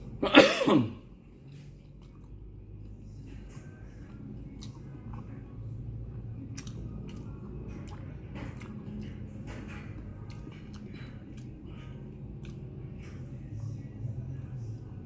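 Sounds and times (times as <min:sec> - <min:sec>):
steady low hum: 0:00.0 - 0:15.0
person chewing: 0:01.2 - 0:13.9
wet mouth clicks: 0:04.5 - 0:05.4, 0:06.5 - 0:09.2.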